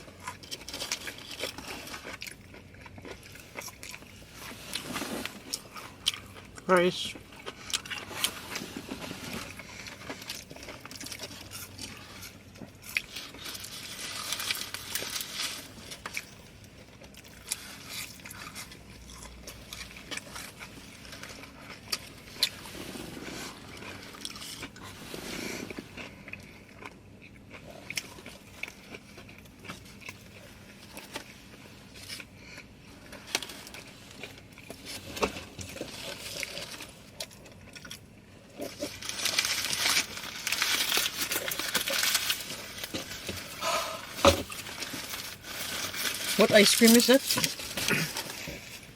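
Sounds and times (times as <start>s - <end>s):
chewing and biting food: 0.0s - 48.9s
food handling clicks and crackles: 0.0s - 48.9s.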